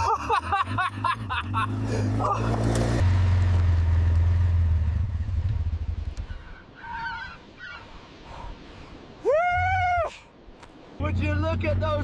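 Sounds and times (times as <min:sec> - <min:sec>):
atv engine droning: 0:00.6 - 0:06.6.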